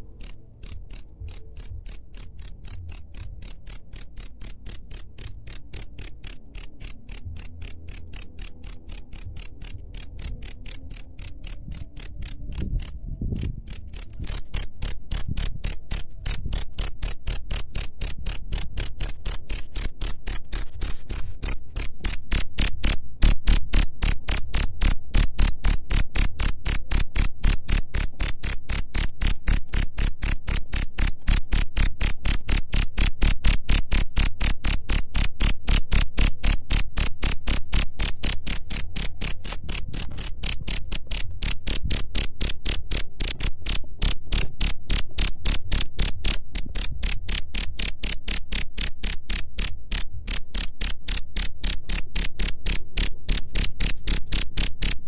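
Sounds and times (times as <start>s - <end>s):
cricket chirping: 0.0s - 55.0s.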